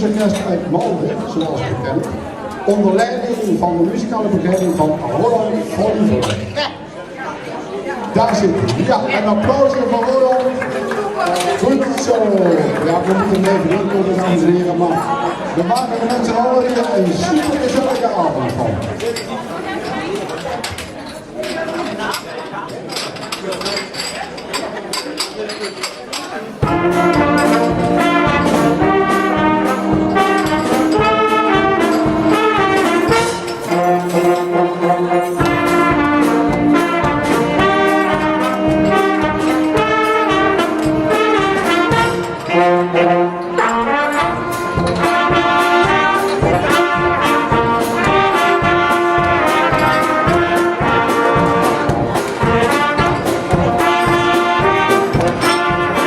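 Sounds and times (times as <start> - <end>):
brass band playing: 8.3 - 19.0, 26.6 - 56.0.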